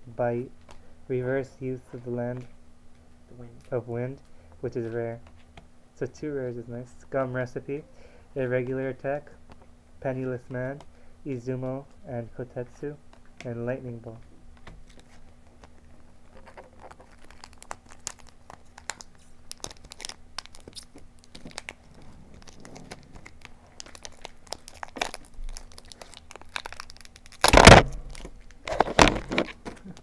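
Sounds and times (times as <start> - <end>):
wrapper crinkling: 14.8 - 30.0
wrapper tearing rips: 16.3 - 30.0.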